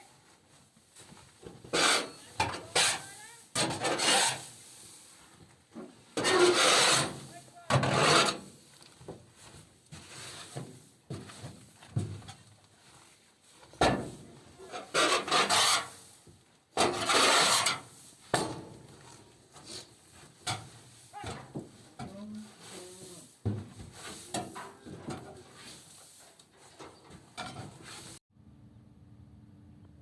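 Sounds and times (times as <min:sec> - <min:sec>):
scraping strokes: 0:01.6 - 0:05.4, 0:06.1 - 0:10.7, 0:14.6 - 0:18.4, 0:19.5 - 0:28.2.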